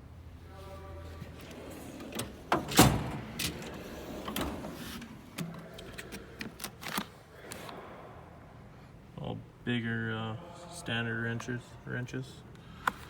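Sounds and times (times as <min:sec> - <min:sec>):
metal drawers sliding and shutting: 0:01.2 - 0:07.1
metal drawer bang: 0:01.4 - 0:05.5.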